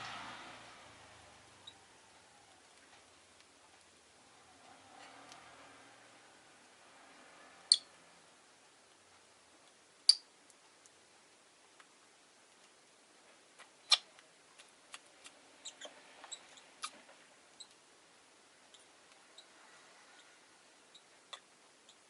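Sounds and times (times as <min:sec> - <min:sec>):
lovebirds chirping and clicking: 0:13.6 - 0:17.8, 0:20.9 - 0:22.0.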